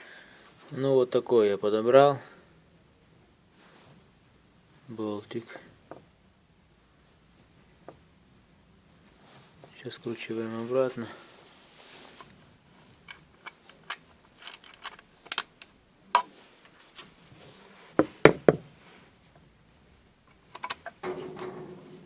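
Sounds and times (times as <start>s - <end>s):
bolt being unscrewed by hand: 13.0s - 17.1s, 20.3s - 21.5s
metallic knocks: 20.6s - 22.0s.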